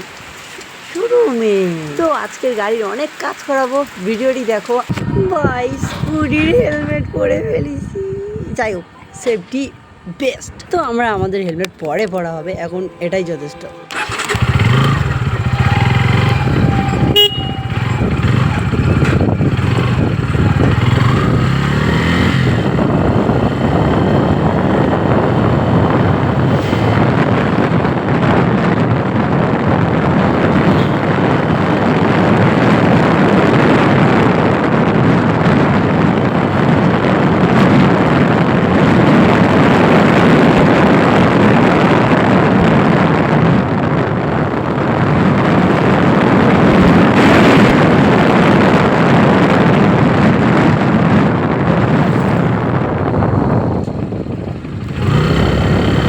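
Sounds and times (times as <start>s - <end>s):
wind buffeting microphone: 0.0s - 56.0s
motorcycle engine pulling away: 13.9s - 56.0s.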